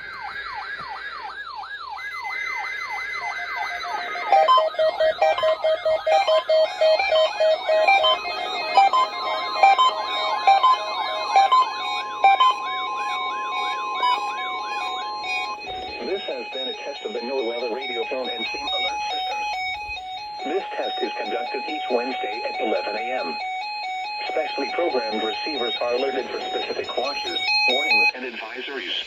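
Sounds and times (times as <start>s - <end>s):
siren-like warbling alarm: 0.0s - 28.1s
steady alarm tone: 0.0s - 28.1s
fast stepped electronic beeps: 2.9s - 19.6s.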